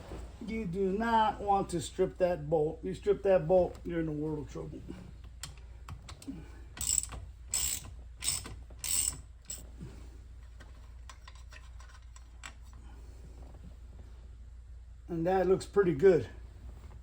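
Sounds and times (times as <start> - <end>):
socket wrench ratcheting: 6.8 - 9.6.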